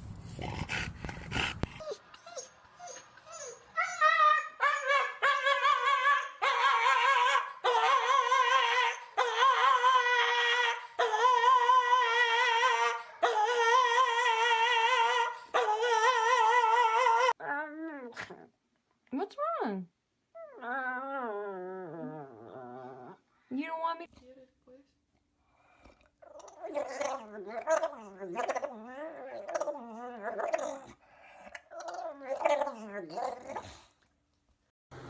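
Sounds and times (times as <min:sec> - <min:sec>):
dog howling: 0:03.8 - 0:18.1.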